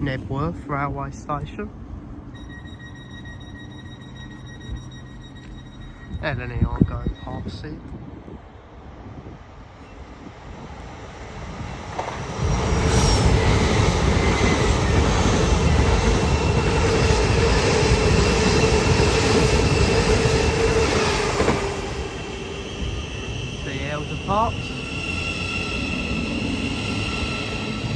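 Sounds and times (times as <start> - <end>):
train wheels and air rushing: 7.3 - 27.9.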